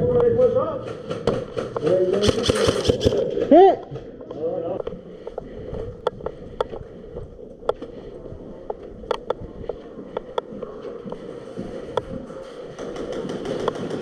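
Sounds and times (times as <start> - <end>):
background hum: 0.0 - 14.0
airsoft gun shots: 2.2 - 3.3.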